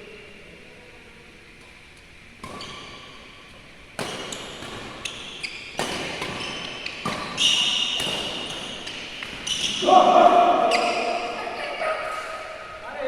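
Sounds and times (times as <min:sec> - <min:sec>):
shoes squeaking on court floor: 0:02.4 - 0:12.4
racket striking shuttlecock: 0:03.9 - 0:11.2.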